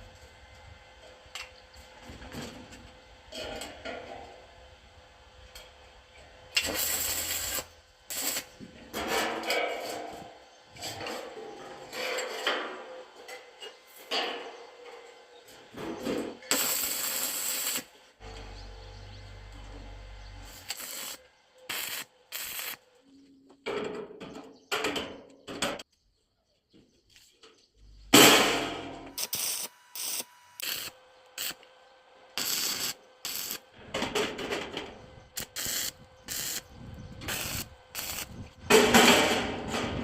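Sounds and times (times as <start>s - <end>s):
loud noisy bursts: 28.1s - 31.7s, 32.3s - 39.8s.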